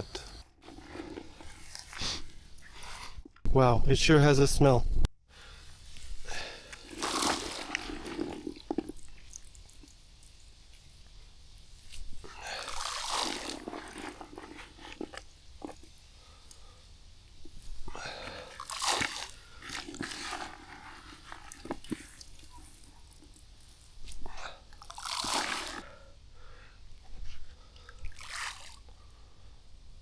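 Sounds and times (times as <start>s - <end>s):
wet grainy bait crunching: 6.8s - 10.0s, 12.4s - 16.0s, 17.9s - 23.5s, 24.8s - 25.8s, 27.8s - 28.8s.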